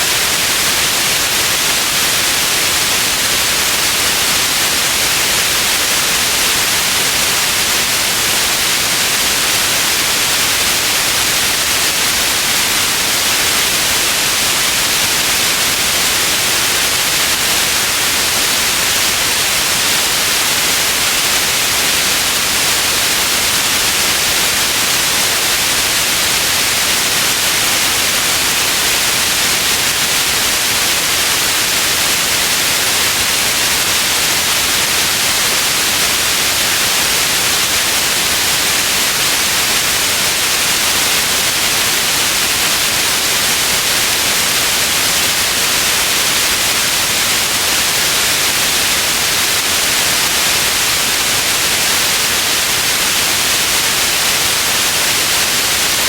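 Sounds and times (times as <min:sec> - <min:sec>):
steady white noise hiss: 0:00.0 - 0:56.0.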